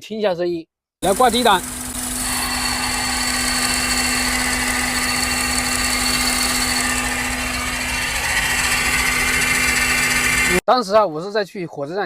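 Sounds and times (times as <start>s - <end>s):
bearing-like whine: 1.0s - 10.6s
engine running: 1.0s - 10.6s.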